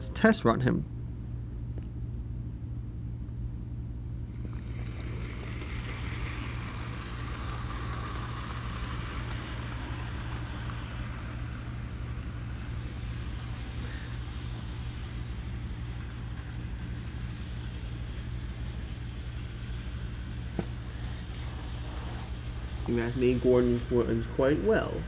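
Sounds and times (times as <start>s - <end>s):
steady low hum: 0.0s - 25.0s
model train motor whirring: 4.3s - 25.0s.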